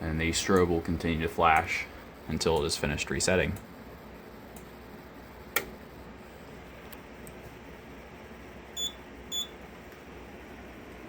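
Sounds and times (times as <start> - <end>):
short high-pitched beeps: 8.8 - 9.5.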